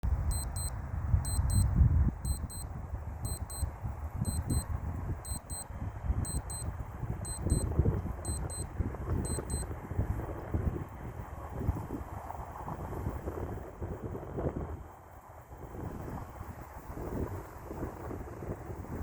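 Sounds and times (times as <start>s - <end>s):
wind on microphone: 0.1s - 19.0s
electronic double beep: 0.3s - 2.7s, 3.3s - 9.6s.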